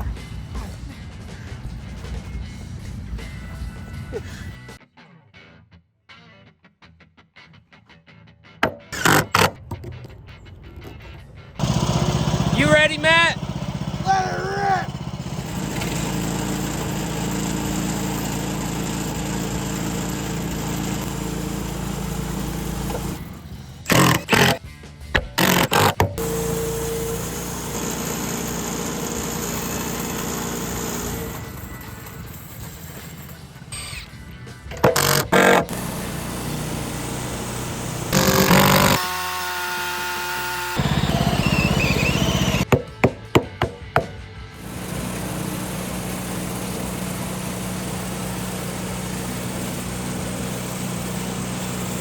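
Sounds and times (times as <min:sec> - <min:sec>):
bandsaw sawmill cutting: 0:08.6 - 0:09.5, 0:11.6 - 0:24.6, 0:25.2 - 0:33.9, 0:34.8 - 0:42.8, 0:44.6 - 0:52.0.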